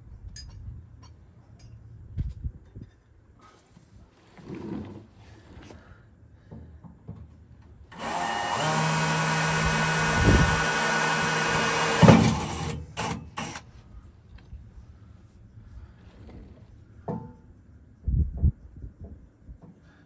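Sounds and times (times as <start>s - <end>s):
power drill running: 7.9s - 13.7s.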